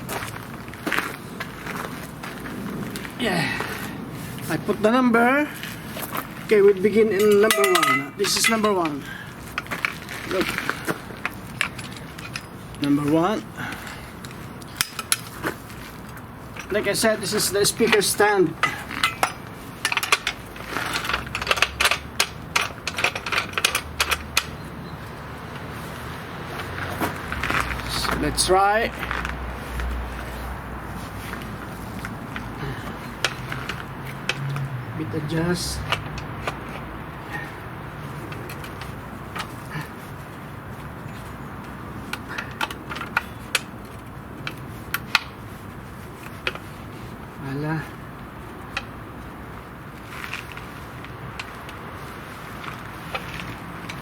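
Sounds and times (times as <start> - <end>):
steel pipe clicking and clinking: 7.0 - 13.1, 14.2 - 15.3, 16.5 - 24.6
metal clicks and light knocks: 7.2 - 10.0, 14.2 - 16.8, 17.8 - 25.7, 32.0 - 34.7, 35.8 - 37.0, 41.1 - 45.4.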